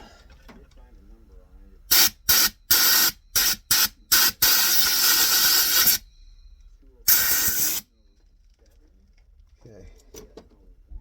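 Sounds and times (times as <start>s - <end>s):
compressed air hissing: 1.9s - 6.0s, 7.1s - 7.9s.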